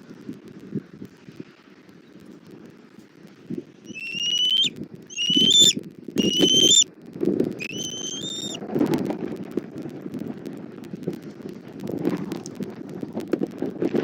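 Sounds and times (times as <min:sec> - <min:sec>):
eagle calling: 0:03.9 - 0:06.8, 0:07.6 - 0:08.6
wind on microphone: 0:03.9 - 0:06.8.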